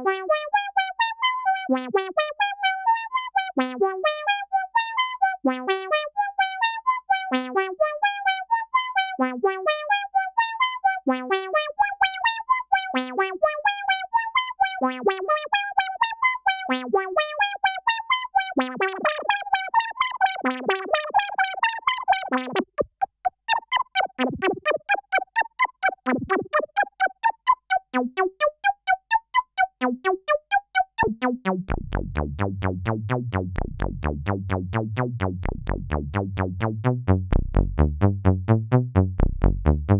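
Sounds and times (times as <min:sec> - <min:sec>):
synthesizer arpeggio: 0:00.1 - 0:36.6
synth bass line: 0:22.4 - 0:27.4, 0:29.6 - 0:39.9.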